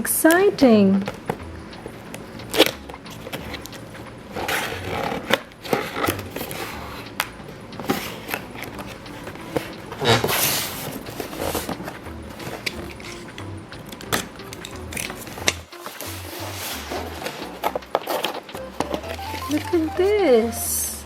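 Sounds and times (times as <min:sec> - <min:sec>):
packaging clicks and taps: 0:00.3 - 0:16.0, 0:17.3 - 0:20.6
packaging rustling and scraping: 0:02.5 - 0:07.0.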